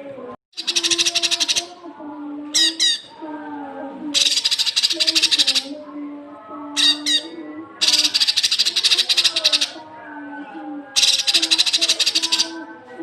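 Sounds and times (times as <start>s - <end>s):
bird song with harsh rattling bursts: 0.6s - 1.7s, 4.2s - 5.7s, 6.8s - 9.8s, 11.0s - 12.6s.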